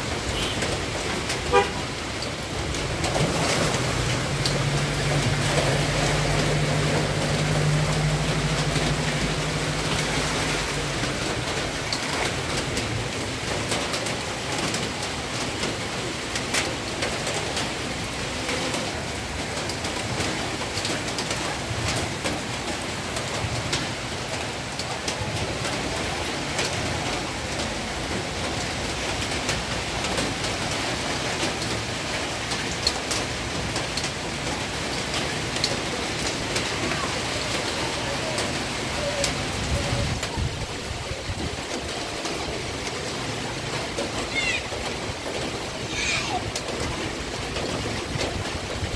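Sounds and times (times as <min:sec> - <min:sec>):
heavy rain falling: 0:00.0 - 0:48.9
low engine hum: 0:02.8 - 0:11.7.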